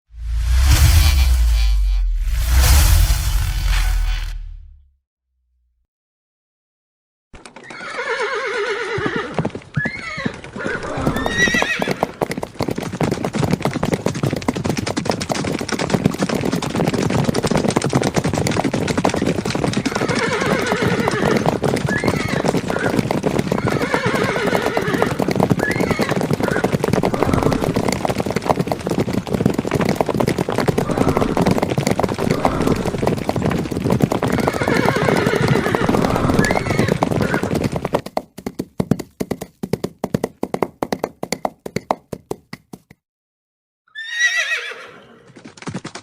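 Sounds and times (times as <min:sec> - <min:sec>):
horses whinnying: 0:07.6 - 0:12.3, 0:19.4 - 0:38.0, 0:43.9 - 0:45.4
hooves clattering: 0:08.8 - 0:43.0, 0:44.4 - 0:46.0.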